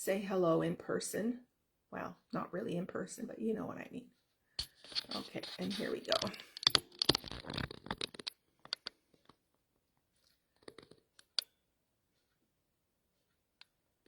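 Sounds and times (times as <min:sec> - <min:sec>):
paper-crafting tools clicking: 0:04.6 - 0:09.3.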